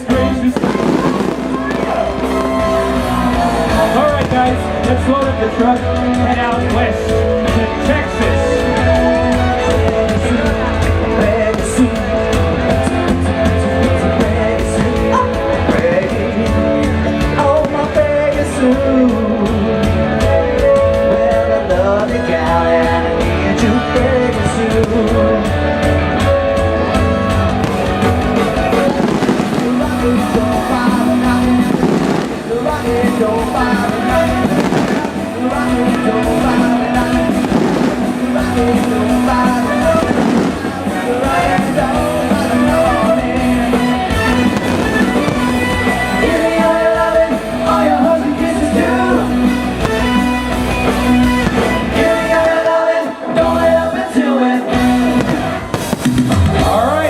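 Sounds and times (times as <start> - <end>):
fireworks bursting: 0.0 - 19.6, 27.2 - 52.9, 54.8 - 57.0
live rock band playing: 0.0 - 57.0.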